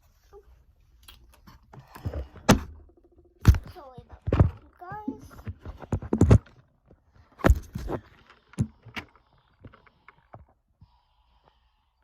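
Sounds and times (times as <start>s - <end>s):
thumps and knocks: 1.5s - 10.5s.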